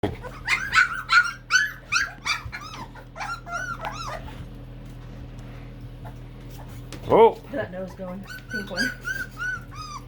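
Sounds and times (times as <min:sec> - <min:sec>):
puppies whining and yelping: 0:00.0 - 0:04.7, 0:06.0 - 0:07.0, 0:07.9 - 0:10.0.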